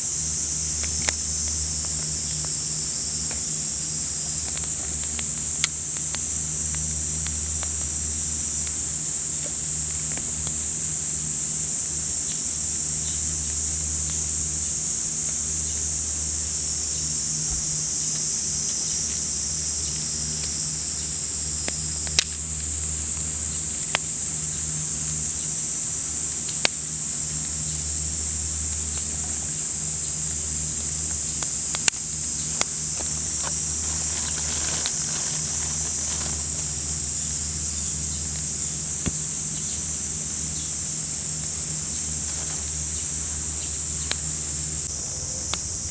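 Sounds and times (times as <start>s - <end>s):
cicadas droning: 0.0s - 45.9s
low steady hum: 0.0s - 45.9s.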